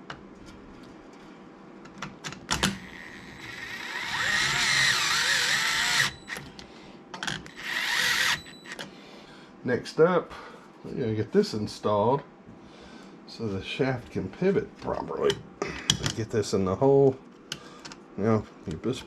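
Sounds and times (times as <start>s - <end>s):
power driver whirring: 2.8s - 6.4s, 7.4s - 8.8s.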